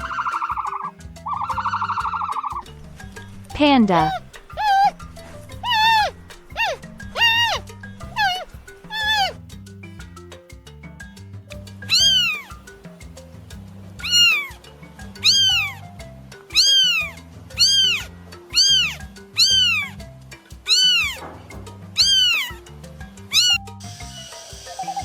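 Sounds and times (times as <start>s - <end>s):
background music: 0.0s - 25.0s
cat meowing: 3.6s - 5.0s, 5.6s - 9.4s, 11.9s - 12.5s, 14.0s - 14.5s, 15.2s - 15.8s, 16.5s - 19.9s, 20.7s - 21.2s, 22.0s - 22.6s, 23.3s - 23.6s.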